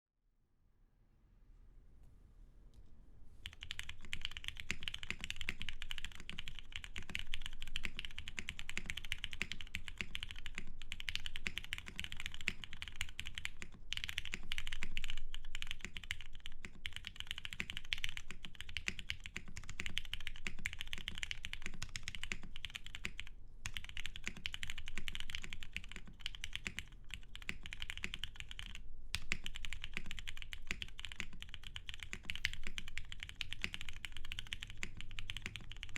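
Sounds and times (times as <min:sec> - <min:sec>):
mechanical keyboard typing: 0:03.4 - 0:35.9.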